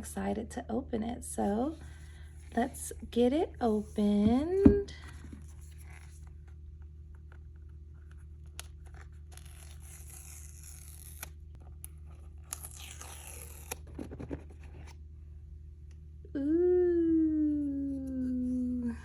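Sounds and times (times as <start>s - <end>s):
steady low hum: 0.0s - 19.0s
paper packaging tearing: 8.6s - 11.4s, 12.1s - 14.0s.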